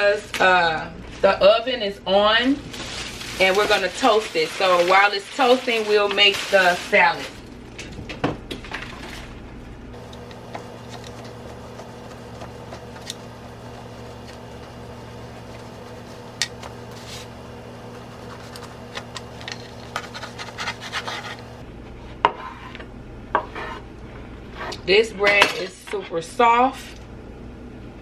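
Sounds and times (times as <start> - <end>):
steady low hum: 0.0 - 28.0
scrapes and clicks on a counter: 23.4 - 23.8.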